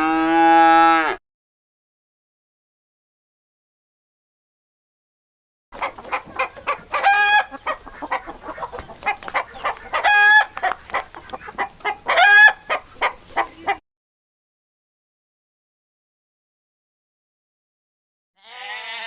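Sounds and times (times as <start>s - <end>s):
chicken clucking: 5.8s - 13.8s
chicken squawk: 5.8s - 13.8s, 18.4s - 19.0s.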